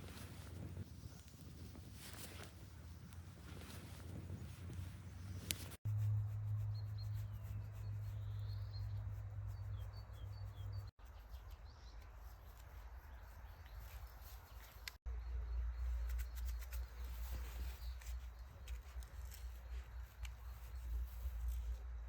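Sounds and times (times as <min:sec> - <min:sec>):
low steady rumble: 0:02.6 - 0:10.9
bird chirping: 0:06.6 - 0:21.3.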